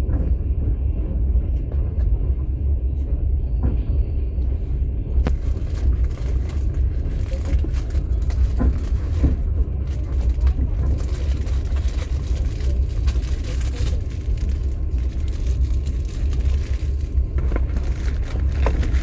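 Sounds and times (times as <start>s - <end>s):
train rumbling: 0.0s - 19.0s
knocks and rattles: 5.2s - 19.0s.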